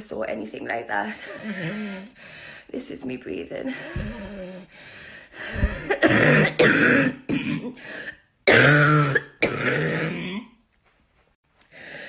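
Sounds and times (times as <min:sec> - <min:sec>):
laboured gasping breathing: 0:01.2 - 0:02.7, 0:03.8 - 0:06.1, 0:07.8 - 0:08.3
woman coughing: 0:05.8 - 0:07.8, 0:08.5 - 0:10.5.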